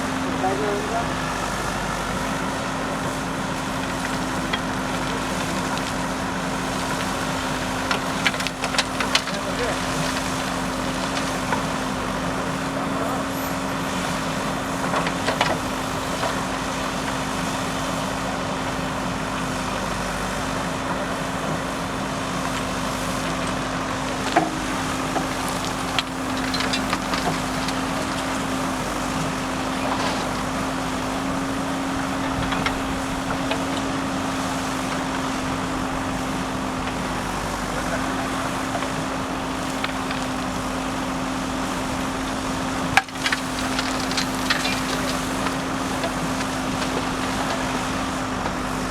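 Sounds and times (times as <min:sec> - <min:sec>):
diesel engine running: 0:00.0 - 0:48.9.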